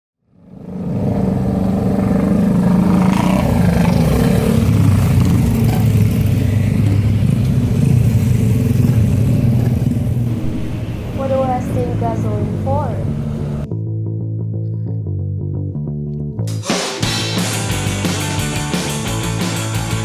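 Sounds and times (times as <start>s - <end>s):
motorcycle engine running: 0.3s - 13.7s.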